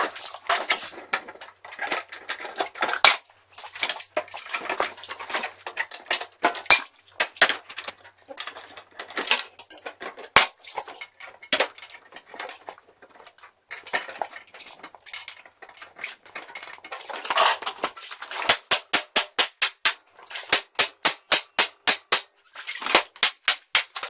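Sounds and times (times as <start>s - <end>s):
metal objects clinking together: 16.5s - 24.0s.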